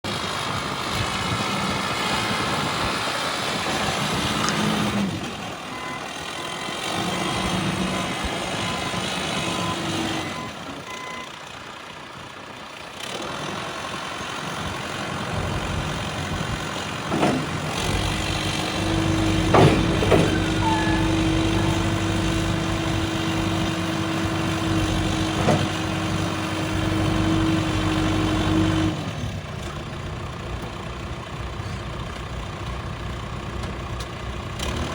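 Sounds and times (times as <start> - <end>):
diesel engine running: 0.1 - 34.9
engine whine: 14.6 - 29.8.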